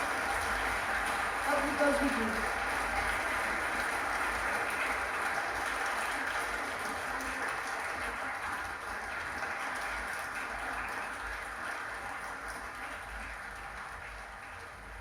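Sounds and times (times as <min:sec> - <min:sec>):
audience applauding: 0:00.0 - 0:15.0.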